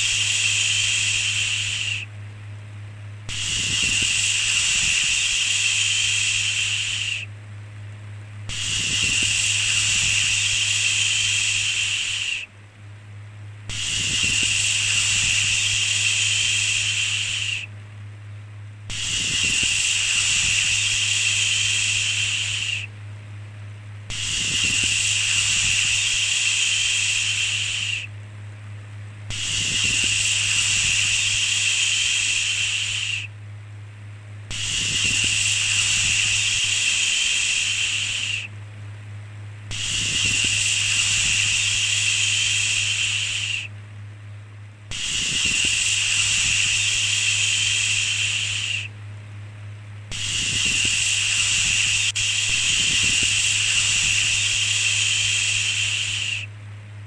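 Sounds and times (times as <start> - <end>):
shushing hiss: 0.0 - 2.1, 3.2 - 7.3, 8.4 - 12.6, 13.7 - 17.7, 18.9 - 22.9, 24.0 - 28.2, 29.3 - 33.4, 34.4 - 38.6, 39.6 - 43.7, 44.9 - 49.0, 50.0 - 56.6.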